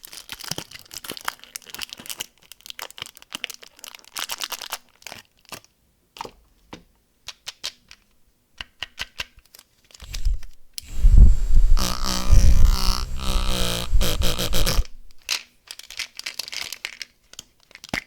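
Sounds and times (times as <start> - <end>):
low buzzy pitched sound: 10.0 - 15.2.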